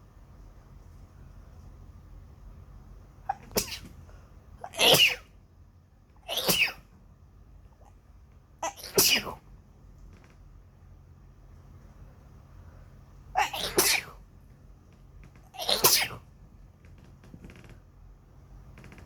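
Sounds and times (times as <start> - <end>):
person sneezing: 3.3 - 4.0, 4.6 - 5.3, 6.3 - 6.8, 8.6 - 9.4, 13.4 - 14.2, 15.6 - 16.2.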